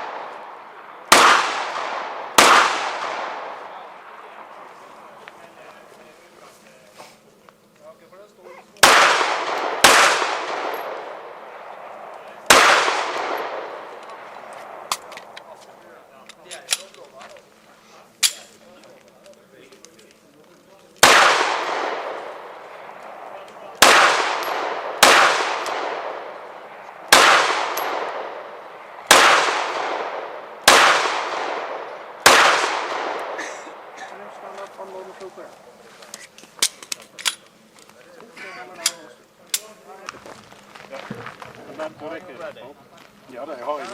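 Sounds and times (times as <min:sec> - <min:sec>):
pistol shots with echo: 0:00.0 - 0:04.7, 0:08.8 - 0:15.5, 0:21.0 - 0:34.8.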